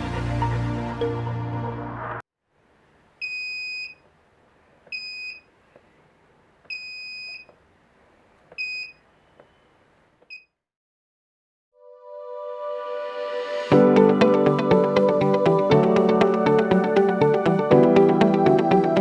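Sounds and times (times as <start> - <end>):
high piezo buzzer beeps: 3.2 - 4.0, 4.9 - 5.5.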